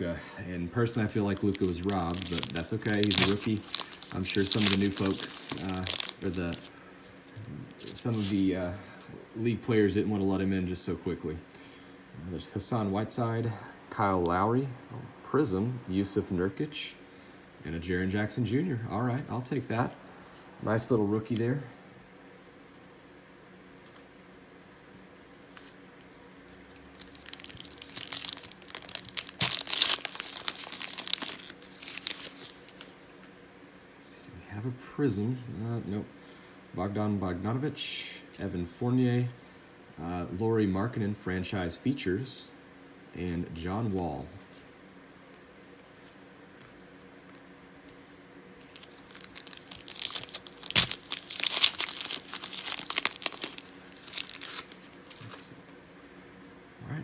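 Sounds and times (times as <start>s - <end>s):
foil wrapper crinkling and tearing: 0.8s - 8.5s, 26.4s - 33.0s, 48.1s - 55.5s.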